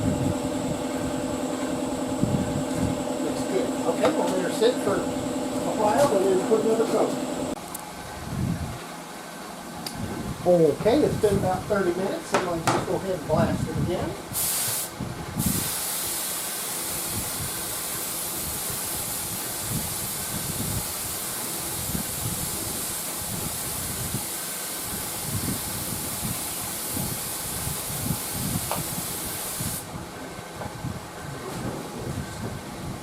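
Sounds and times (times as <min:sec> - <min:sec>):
spray gun hissing: 0:00.0 - 0:07.6, 0:14.3 - 0:29.9.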